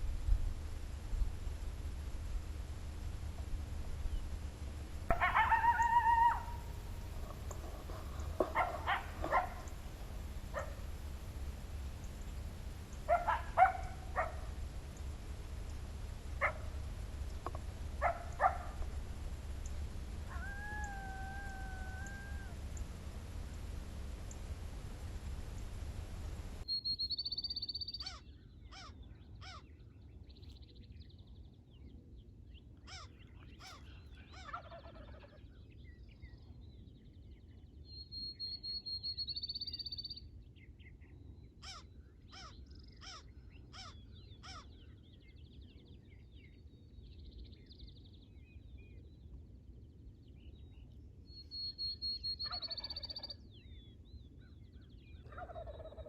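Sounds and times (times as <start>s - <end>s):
birds trilling: 0.6s - 29.8s, 32.9s - 35.6s, 41.6s - 45.1s, 51.4s - 53.4s, 54.4s - 56.0s
turkeys gobbling: 2.0s - 26.6s, 33.6s - 35.4s, 52.4s - 53.3s, 55.2s - 56.0s.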